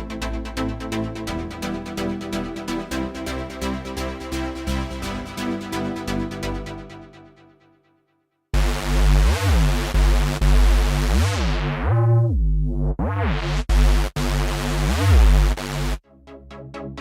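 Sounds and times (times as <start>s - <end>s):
buzzy synthesizer bass: 8.6s - 17.0s.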